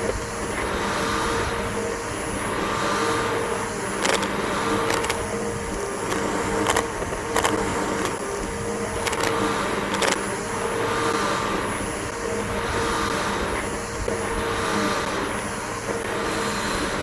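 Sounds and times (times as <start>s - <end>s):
upright vacuum running: 3.0s - 10.2s
sharp clicks: 4.0s - 10.3s.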